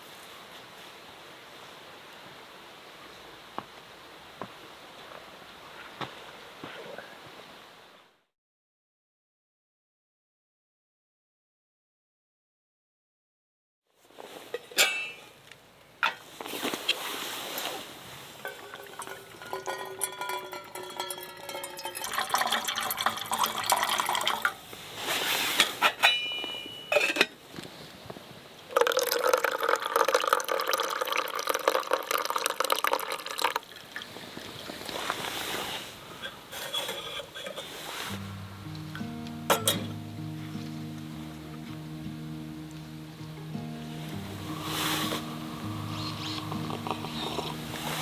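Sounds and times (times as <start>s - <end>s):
dishes clinking: 14.5s - 15.4s, 18.4s - 24.6s, 25.6s - 27.4s, 36.2s - 38.0s, 39.5s - 40.0s
liquid pouring into a cup: 18.4s - 24.6s, 28.7s - 35.3s, 46.2s - 48.0s.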